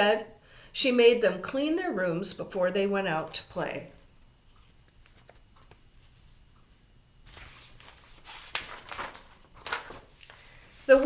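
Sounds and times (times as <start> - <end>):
book page turning: 4.5 - 6.4, 7.2 - 11.0.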